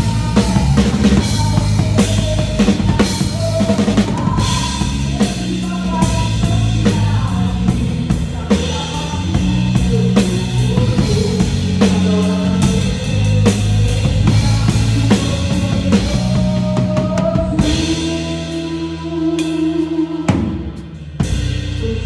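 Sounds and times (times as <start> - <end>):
drum kit beat: 0.0 - 22.0
live band music: 0.0 - 22.0.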